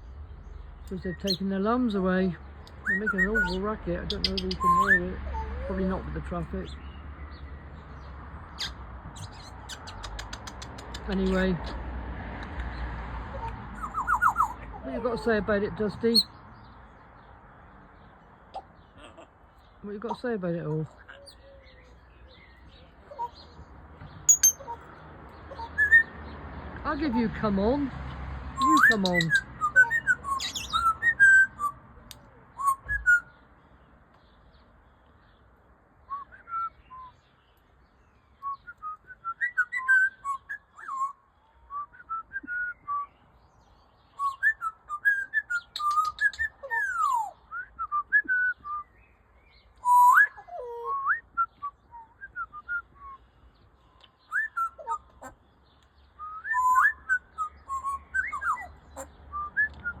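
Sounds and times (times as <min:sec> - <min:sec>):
parrot whistling: 0:13.4 - 0:14.7, 0:24.3 - 0:24.8, 0:28.6 - 0:31.8, 0:44.2 - 0:48.5, 0:49.8 - 0:53.2, 0:56.2 - 1:00.0.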